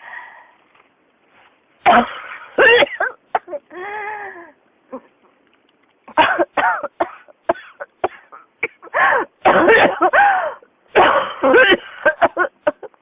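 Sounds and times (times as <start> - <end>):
person coughing: 1.8 - 3.6, 6.1 - 12.9.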